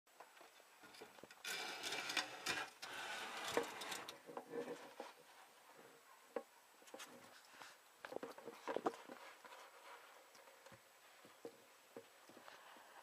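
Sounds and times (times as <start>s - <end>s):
rustling: 0.2s - 13.0s.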